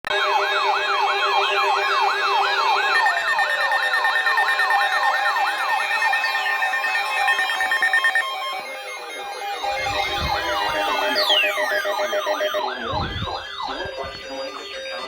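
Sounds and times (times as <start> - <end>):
electronic siren yelping: 0.1 - 15.0
sirens sliding down in pitch: 0.1 - 15.0
steady high tone: 6.3 - 15.0.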